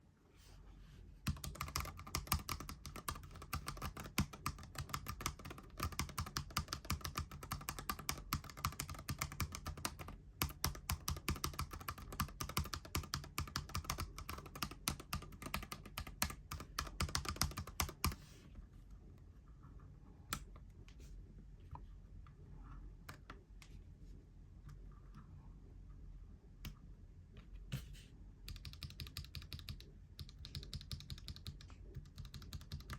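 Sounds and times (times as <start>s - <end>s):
mechanical keyboard typing: 1.3s - 18.2s, 28.5s - 32.9s.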